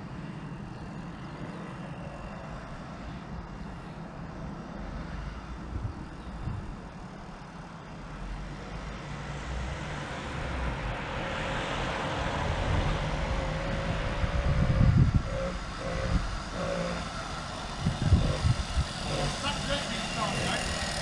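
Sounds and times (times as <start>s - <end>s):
two-stroke engine revving: 12.3s - 21.0s.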